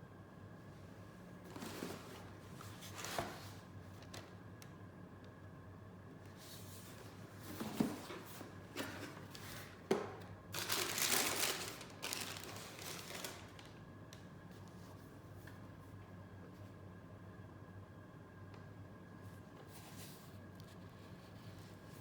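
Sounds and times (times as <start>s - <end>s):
paper rustling and crinkling: 1.4s - 4.3s, 6.4s - 13.8s.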